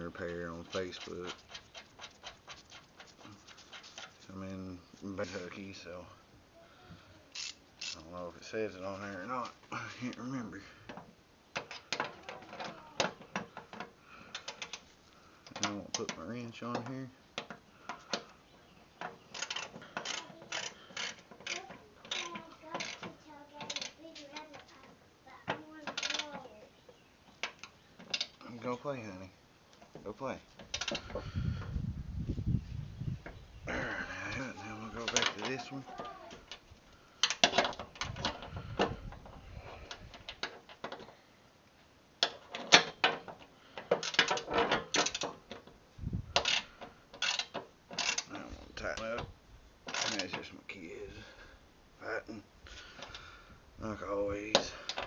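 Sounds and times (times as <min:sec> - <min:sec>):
ratchet wrench clicking: 0:07.3 - 0:08.0, 0:19.4 - 0:23.0, 0:26.0 - 0:26.2.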